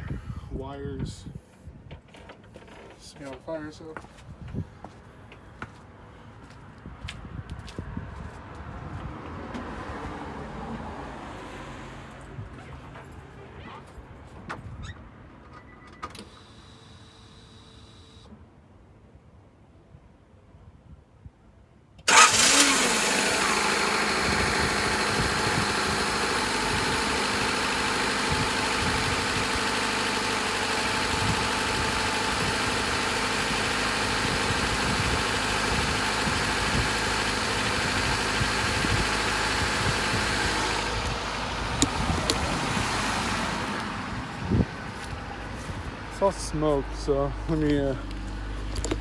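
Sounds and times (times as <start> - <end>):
car engine starting and idling: 9.0 - 18.3, 22.0 - 49.0.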